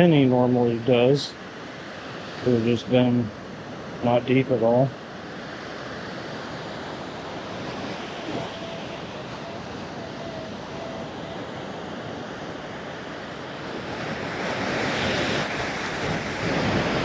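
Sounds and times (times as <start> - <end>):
surf on beach: 0.0 - 17.0
wind buffeting microphone: 6.0 - 17.0.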